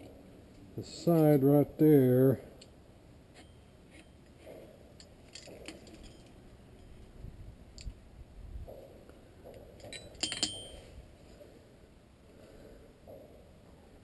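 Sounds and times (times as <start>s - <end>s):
sharp metal clinks: 9.8s - 11.0s.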